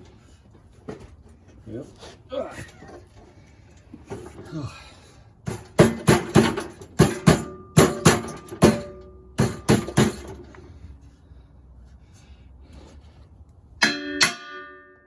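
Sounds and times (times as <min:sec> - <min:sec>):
metallic knocks: 0:05.4 - 0:10.5, 0:13.8 - 0:15.0.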